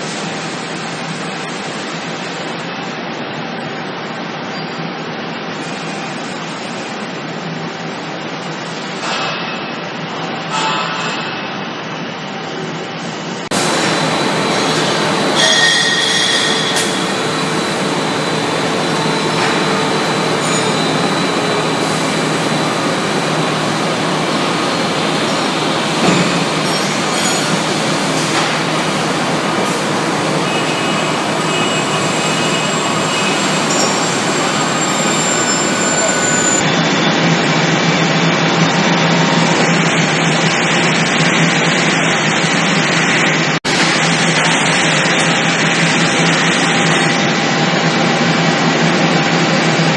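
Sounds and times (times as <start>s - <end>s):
loud machinery noise: 5.4s - 49.9s
faint whining tones: 13.5s - 36.6s.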